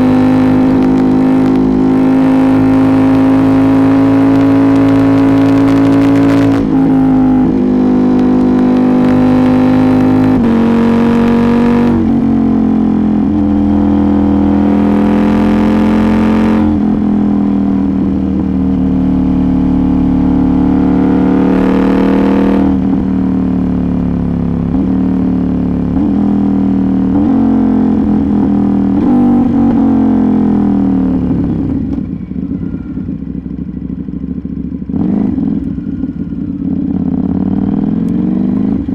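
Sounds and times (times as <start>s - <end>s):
motorcycle engine accelerating through gears: 0.0s - 38.9s.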